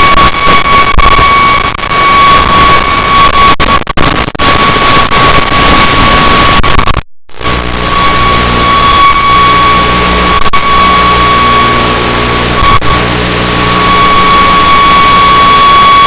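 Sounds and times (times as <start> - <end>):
high-pitched whine: 0.0 - 16.0
static hiss: 0.0 - 16.0.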